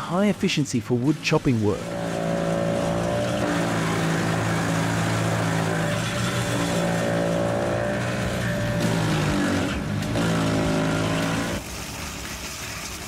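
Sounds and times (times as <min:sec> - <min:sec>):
wood chipper engine running: 0:01.8 - 0:11.6.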